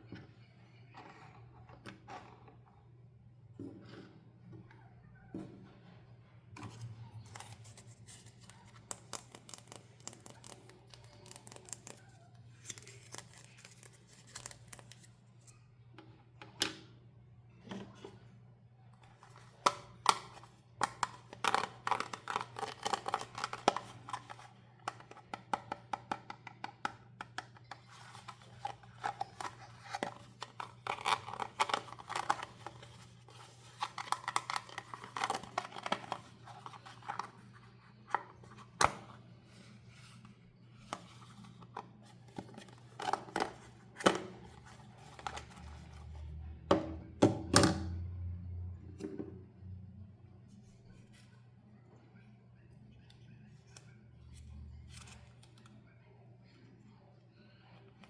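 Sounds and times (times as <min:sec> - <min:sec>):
packaging being torn open: 0:07.4 - 0:15.1, 0:20.9 - 0:24.3, 0:28.2 - 0:32.9.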